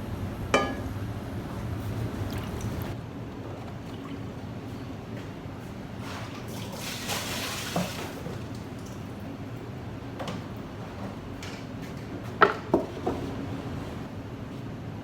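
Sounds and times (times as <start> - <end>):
water running and trickling: 0.1 - 3.0.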